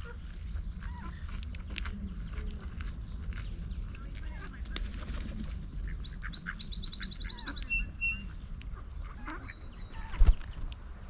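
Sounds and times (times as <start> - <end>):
ducks quacking: 5.7 - 10.2
songbird calling high notes: 5.9 - 8.4.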